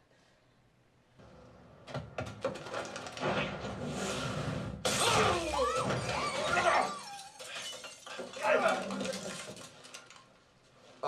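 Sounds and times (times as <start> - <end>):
loud crash with shattering: 2.9 - 9.7.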